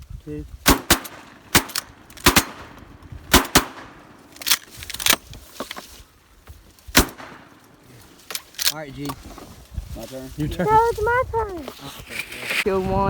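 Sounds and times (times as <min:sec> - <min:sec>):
shotgun blasts: 0:00.6 - 0:04.4, 0:06.9 - 0:07.6.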